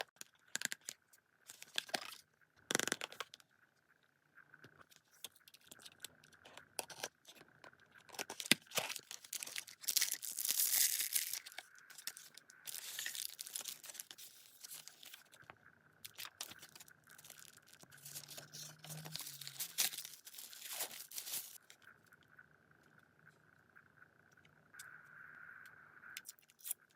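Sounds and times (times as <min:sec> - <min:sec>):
plastic and paper tearing: 0:08.1 - 0:15.3, 0:16.1 - 0:21.6.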